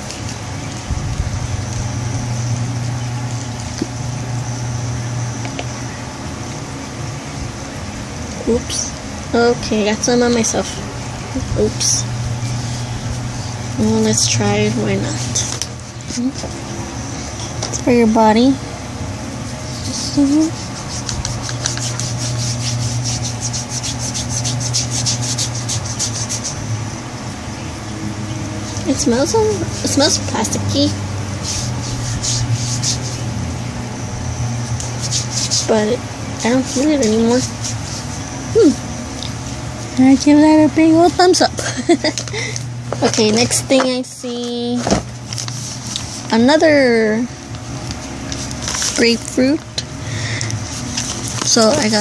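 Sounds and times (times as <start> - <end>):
steady low hum: 0.0 - 52.0
hands rubbing skin: 19.4 - 26.6, 31.4 - 33.3, 34.7 - 35.7, 36.4 - 38.3, 50.5 - 52.0.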